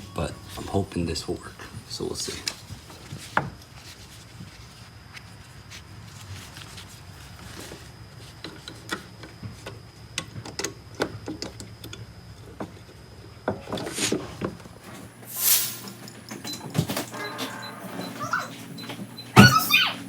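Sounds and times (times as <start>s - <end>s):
scraping rustle: 2.2s - 8.4s.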